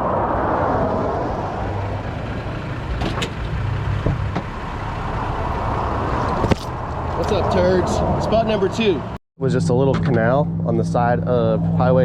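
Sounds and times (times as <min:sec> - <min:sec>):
road noise: 0:00.0 - 0:09.2
vehicle engine hum: 0:00.0 - 0:09.2.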